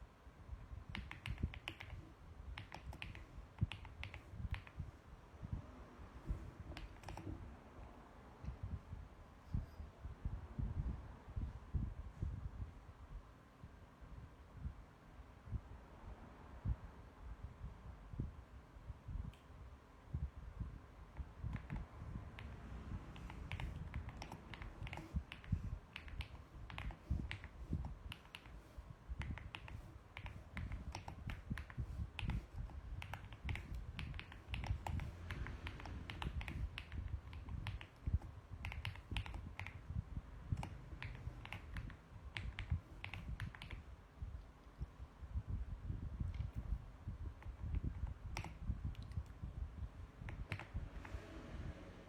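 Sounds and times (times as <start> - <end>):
mechanical keyboard typing: 0.9 - 5.1, 6.2 - 7.6, 21.2 - 44.0, 46.3 - 49.4, 50.2 - 51.2.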